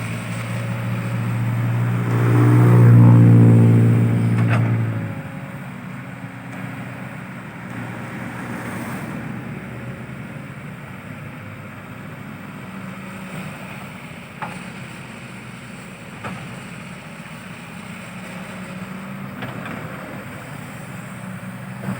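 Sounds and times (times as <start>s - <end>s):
excavator diesel engine running: 0.0s - 21.9s.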